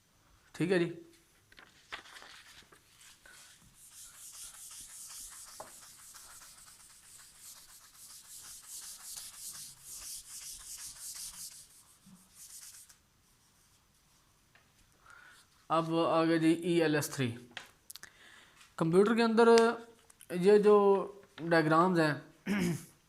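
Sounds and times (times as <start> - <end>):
pen scratching on paper: 3.4 - 13.0.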